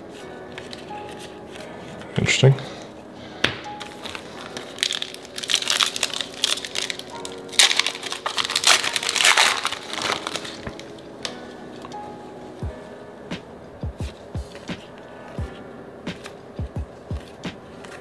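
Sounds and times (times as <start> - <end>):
plastic wrapper crinkling: 3.7 - 12.1.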